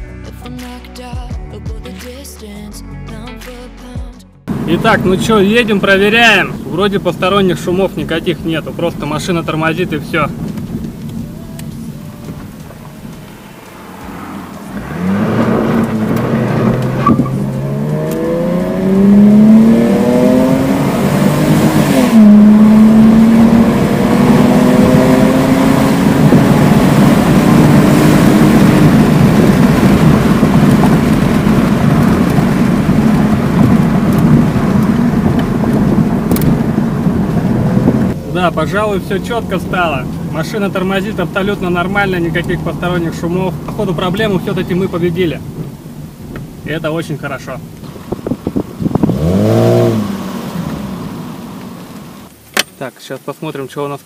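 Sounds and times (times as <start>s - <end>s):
car engine accelerating: 4.4s - 52.6s
road noise: 4.4s - 54.0s.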